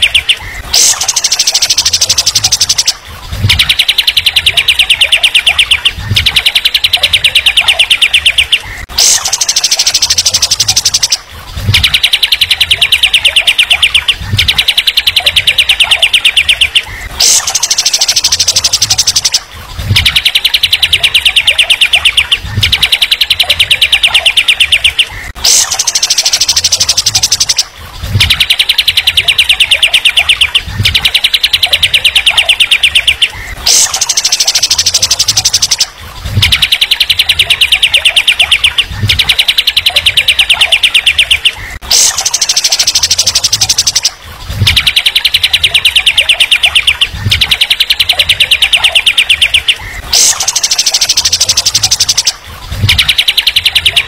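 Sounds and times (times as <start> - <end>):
songbird chattering trill: 0.0 - 2.9.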